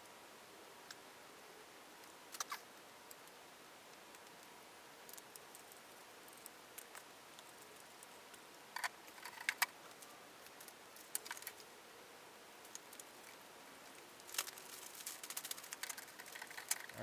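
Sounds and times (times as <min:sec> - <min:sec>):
plastic parts clicking and knocking: 0:15.4 - 0:17.0.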